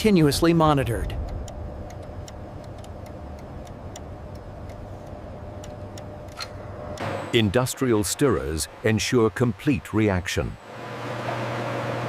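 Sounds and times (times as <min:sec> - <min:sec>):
industrial machine hum: 0:00.0 - 0:12.0
faint ticking: 0:01.0 - 0:07.1.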